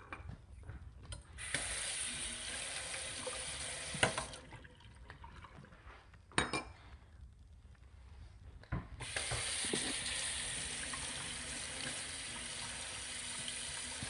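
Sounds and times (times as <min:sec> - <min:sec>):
kitchen tap running into sink: 0:01.4 - 0:05.5, 0:09.0 - 0:14.0
dishes clattering: 0:06.3 - 0:06.8.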